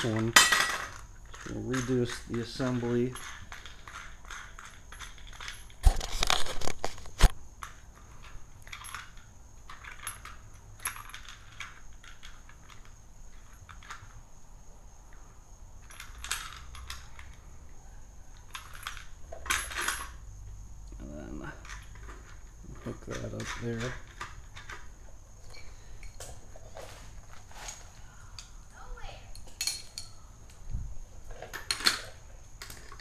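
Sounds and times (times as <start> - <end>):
metal knocks and clatter: 0.0 - 2.5
small metal hardware clinking: 0.0 - 6.6, 7.6 - 14.2, 18.4 - 20.2, 29.3 - 30.7, 31.3 - 33.0.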